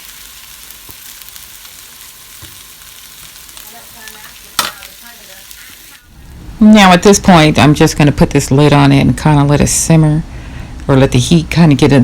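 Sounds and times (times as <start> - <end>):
chicken sizzling in a skillet: 0.0 - 6.4.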